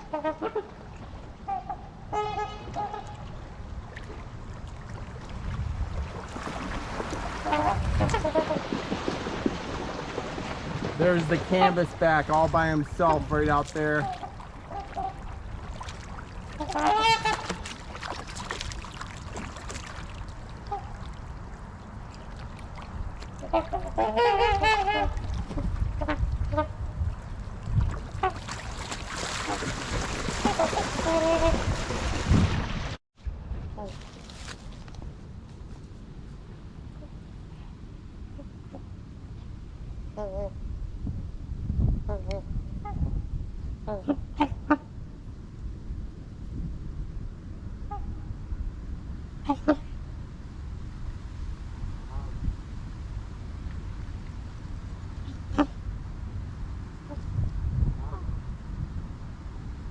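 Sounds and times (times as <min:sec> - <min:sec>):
waterfowl honking: 0:00.0 - 0:00.8, 0:01.4 - 0:03.4, 0:07.4 - 0:08.7, 0:11.0 - 0:12.3, 0:13.0 - 0:15.4, 0:16.5 - 0:17.7, 0:23.4 - 0:25.2, 0:30.4 - 0:31.7.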